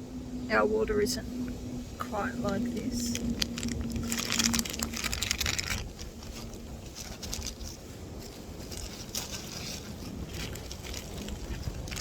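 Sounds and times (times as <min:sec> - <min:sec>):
steady low rumble: 0:00.0 - 0:12.0
plastic packaging crinkling: 0:03.0 - 0:12.0.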